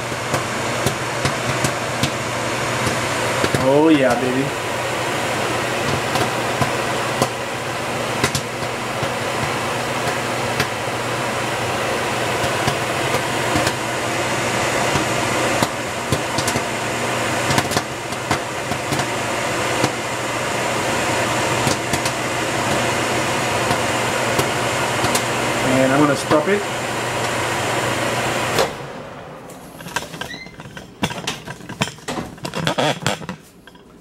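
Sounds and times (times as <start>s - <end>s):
popcorn popping: 0.0s - 28.9s, 29.8s - 34.0s
microwave oven humming: 0.0s - 34.0s.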